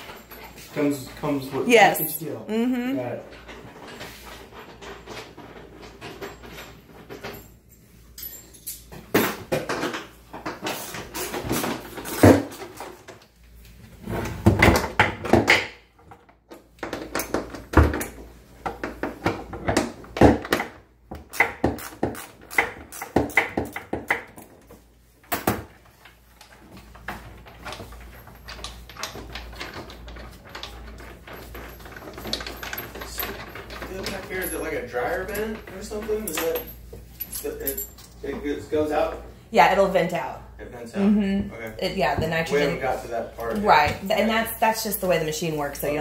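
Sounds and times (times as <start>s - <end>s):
wrench and bolts clattering: 3.3s - 10.1s, 26.4s - 38.2s.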